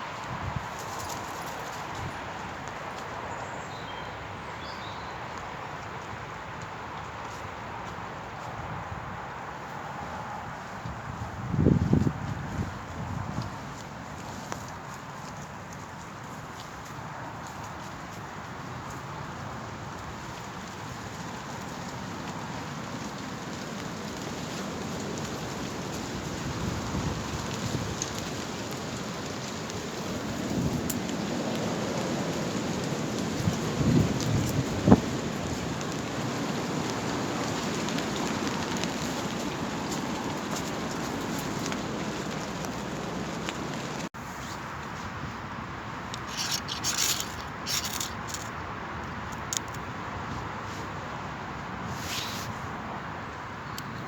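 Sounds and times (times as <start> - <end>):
low gusting wind rumble: 8.6 - 14.2, 18.6 - 44.1
steady rain falling: 13.4 - 44.1
rustling and scraping: 38.8 - 45.1, 46.0 - 48.6, 51.9 - 52.7.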